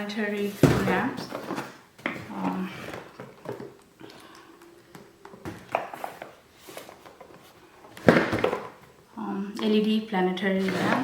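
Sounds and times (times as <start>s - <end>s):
cardboard boxes being handled: 0.4s - 3.8s, 5.4s - 9.0s.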